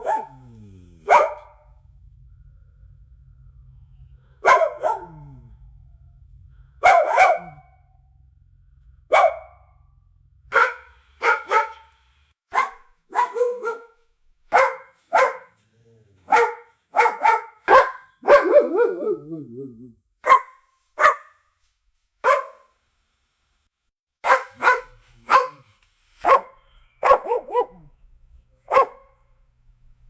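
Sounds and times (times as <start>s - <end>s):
dog barking: 0.0s - 1.5s, 4.4s - 5.4s, 6.8s - 7.8s, 9.1s - 9.7s, 10.5s - 11.9s, 12.5s - 15.6s, 16.3s - 21.4s, 22.2s - 22.7s, 24.2s - 27.9s, 28.7s - 29.2s
low background hum: 0.0s - 11.3s.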